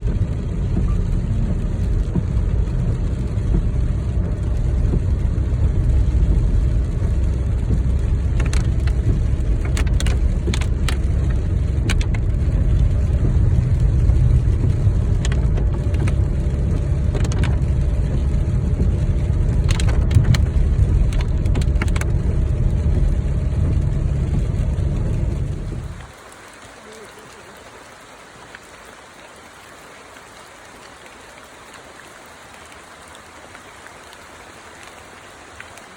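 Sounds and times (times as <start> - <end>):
car road and engine rumble: 0.0 - 26.7.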